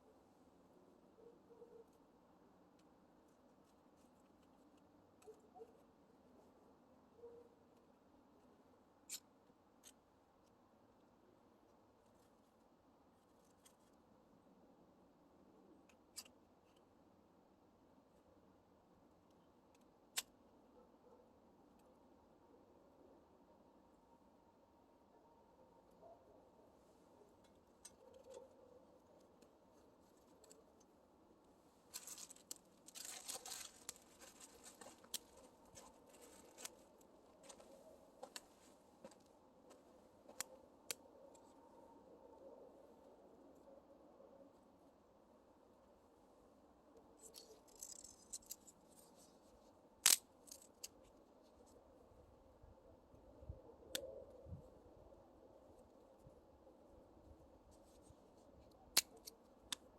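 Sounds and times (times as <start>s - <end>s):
small clicks and rustles: 2.7s - 6.5s, 11.7s - 14.0s, 27.3s - 31.0s, 31.8s - 39.3s, 47.2s - 51.8s
faint crackling and rustling: 27.2s - 40.5s.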